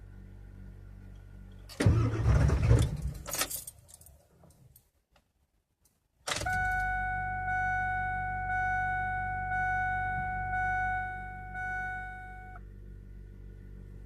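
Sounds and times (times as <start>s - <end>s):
diesel engine cranking: 1.5s - 3.7s
rough burst of engine noise: 1.8s - 3.2s.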